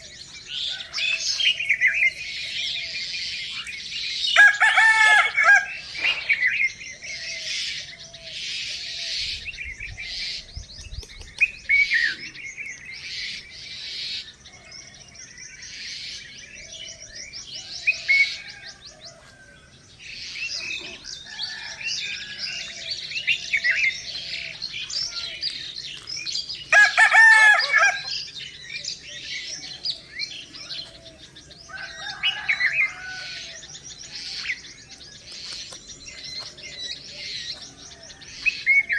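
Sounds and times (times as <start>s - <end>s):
rooster crowing: 0.0s - 2.1s, 4.3s - 6.5s, 17.6s - 19.7s, 20.6s - 25.4s, 26.7s - 28.4s, 30.6s - 34.1s
songbirds chirping and trilling: 0.0s - 38.9s.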